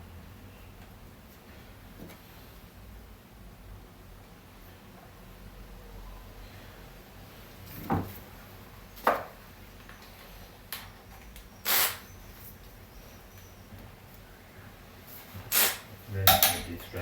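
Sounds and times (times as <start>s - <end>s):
tools knocking and clattering: 16.2s - 17.0s.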